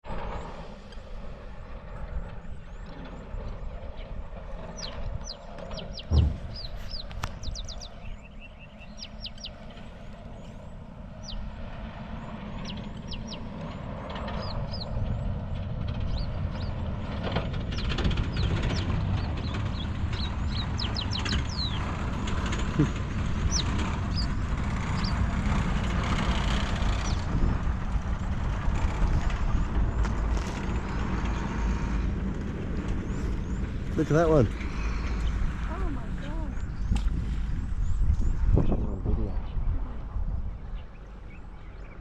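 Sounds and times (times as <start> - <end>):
low rumble: 0.0 - 42.0
birds chirping: 0.2 - 42.0
loud low thump: 6.0 - 7.6.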